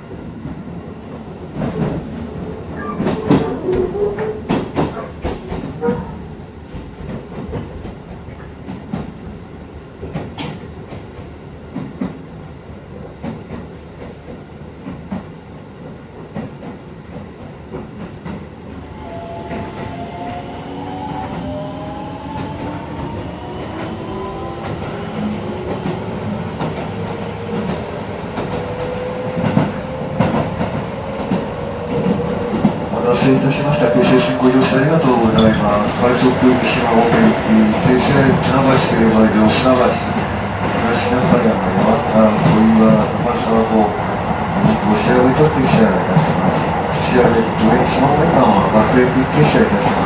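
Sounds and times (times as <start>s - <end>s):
electric train rumble: 0.0s - 50.0s
rail-joint clacks: 2.8s - 9.2s, 10.0s - 12.2s, 13.0s - 43.9s.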